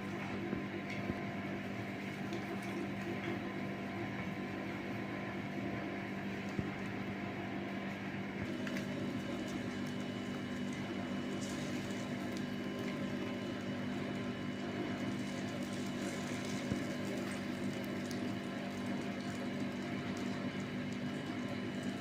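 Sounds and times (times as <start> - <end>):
mechanical hum: 0.0 - 22.0.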